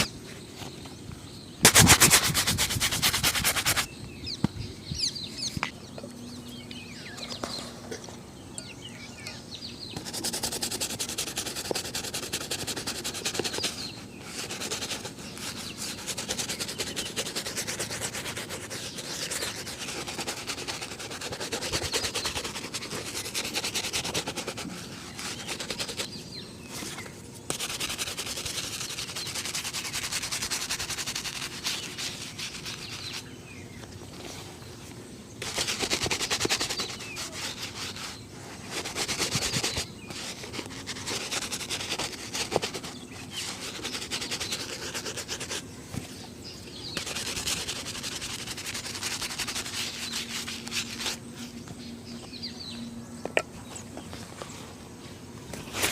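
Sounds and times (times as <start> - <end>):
rubbing of shoe leather: 1.6 - 3.9, 9.9 - 33.3, 35.4 - 52.2, 55.5 - 55.9.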